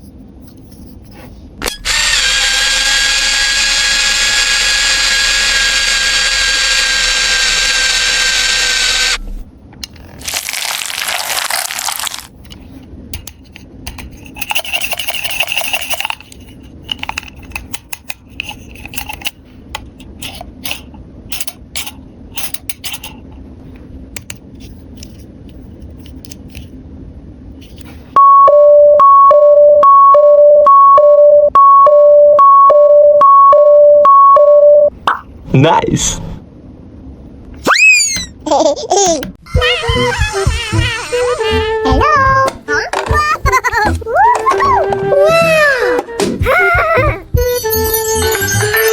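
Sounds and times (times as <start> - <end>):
toy drill electronic buzz: 1.6 - 9.4
plastic packaging rustling: 9.9 - 12.8.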